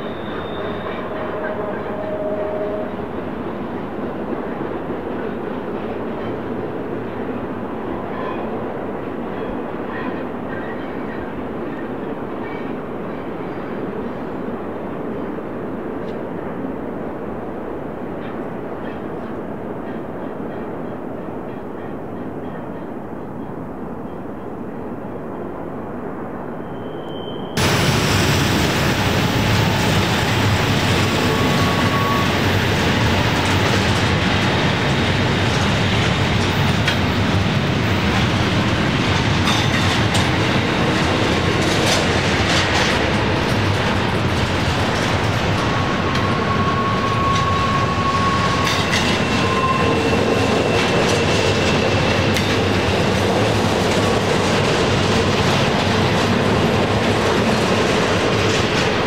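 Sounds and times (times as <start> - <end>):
steel wheel squeal: 0.0 - 2.7, 26.6 - 27.6, 31.0 - 32.7, 45.6 - 52.4
freight train rumbling past: 0.0 - 59.0.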